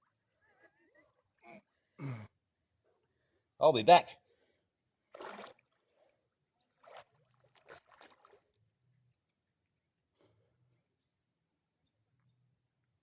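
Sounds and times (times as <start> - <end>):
water splashing from wading: 5.1 - 5.8, 6.8 - 8.4.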